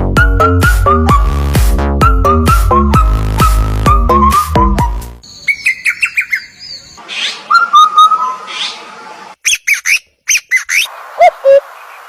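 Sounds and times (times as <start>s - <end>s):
bird chirping and whistling: 2.1s - 8.8s, 9.4s - 11.6s.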